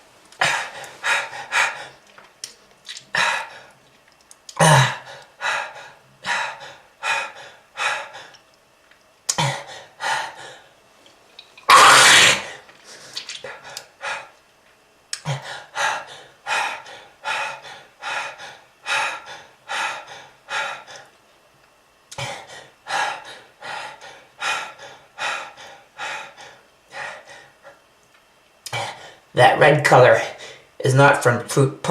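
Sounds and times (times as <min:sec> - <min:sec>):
person coughing: 0:04.6 - 0:05.0.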